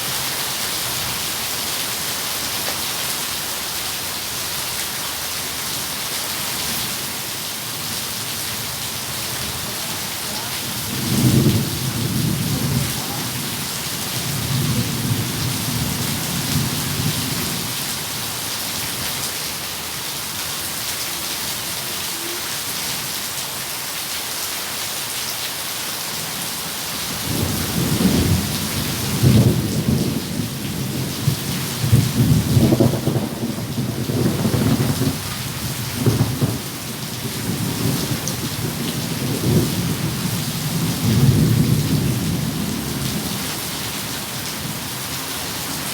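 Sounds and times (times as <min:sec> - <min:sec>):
steady rain: 0:00.0 - 0:45.9
thunder rumbling: 0:09.3 - 0:17.8, 0:27.2 - 0:44.9.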